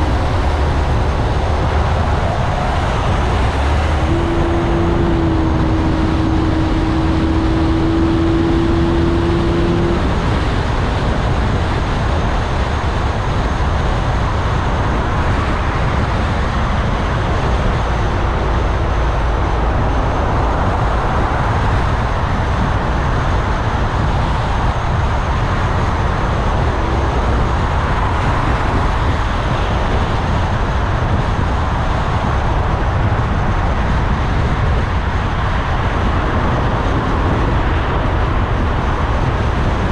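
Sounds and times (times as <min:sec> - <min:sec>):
steady single tone: 0:00.0 - 0:10.1
car driving in city traffic: 0:00.0 - 0:39.9.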